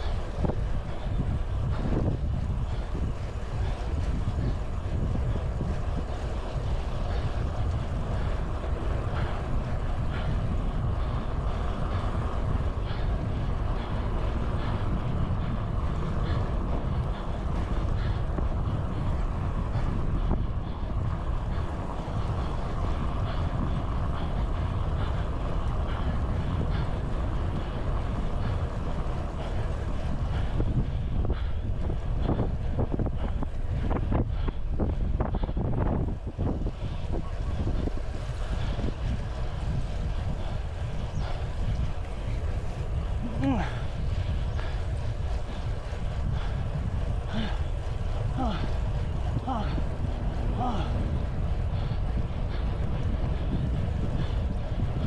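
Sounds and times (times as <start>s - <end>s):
road and traffic noise: 0.0s - 55.0s
wind buffeting microphone: 0.0s - 55.0s.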